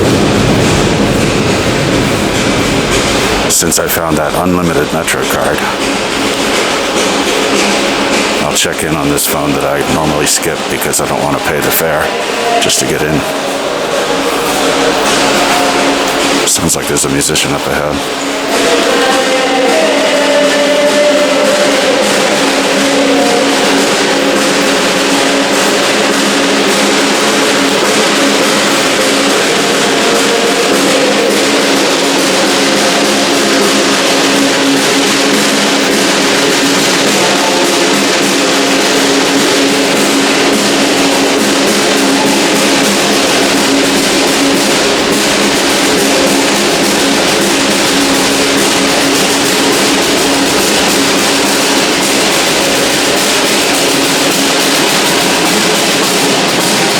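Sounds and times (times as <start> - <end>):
drumming: 0.0 - 56.9
guitar playing: 0.0 - 56.9.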